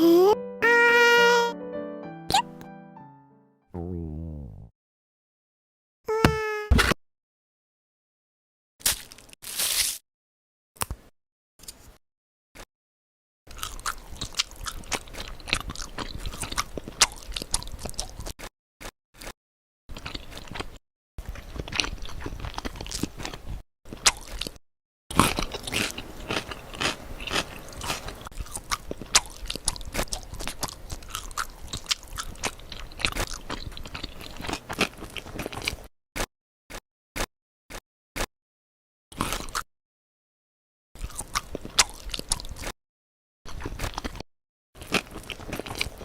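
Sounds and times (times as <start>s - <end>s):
crunching and chewing: 13.5s - 38.3s, 39.1s - 39.7s, 41.0s - 42.8s, 43.5s - 44.2s, 44.8s - 46.0s.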